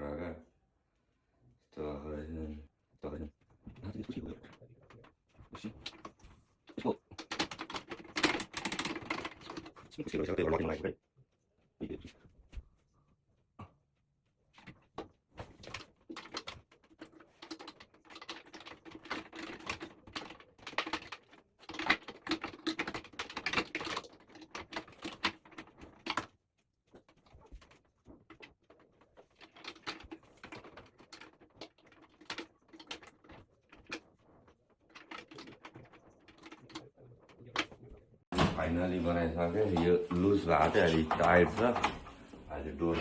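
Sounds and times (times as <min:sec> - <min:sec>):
hands clicking and scraping on oven door: 0:38.4 - 0:43.0.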